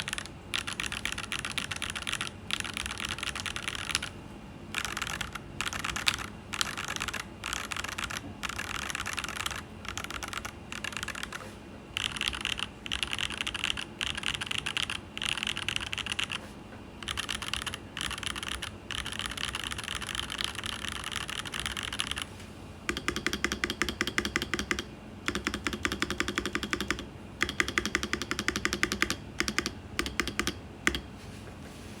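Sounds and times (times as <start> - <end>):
mechanical keyboard typing: 0.0 - 11.4, 12.0 - 16.4, 17.0 - 22.3, 22.9 - 31.1.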